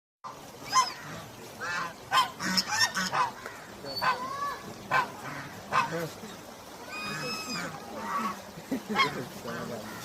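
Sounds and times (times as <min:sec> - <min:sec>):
duck quacking: 0:00.7 - 0:03.4, 0:04.9 - 0:06.1.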